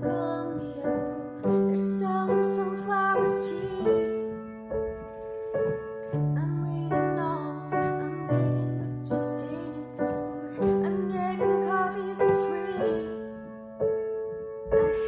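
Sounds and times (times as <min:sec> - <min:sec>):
woman singing softly: 0:00.0 - 0:04.4, 0:06.3 - 0:13.5, 0:14.7 - 0:15.0
piano playing chords: 0:00.0 - 0:15.0.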